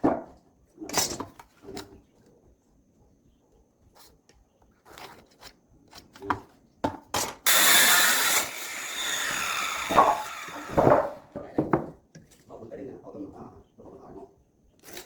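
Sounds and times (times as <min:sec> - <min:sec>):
tool rasping wood: 0:07.5 - 0:11.1.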